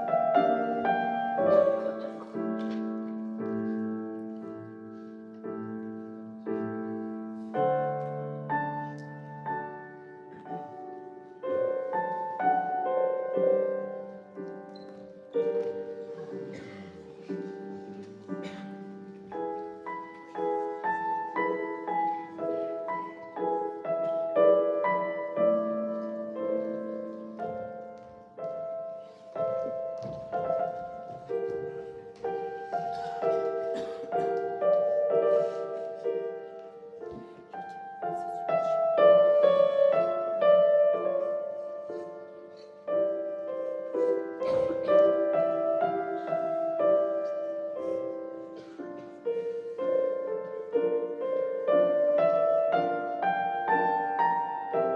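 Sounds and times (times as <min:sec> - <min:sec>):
gentle piano melody: 0:00.0 - 0:54.9.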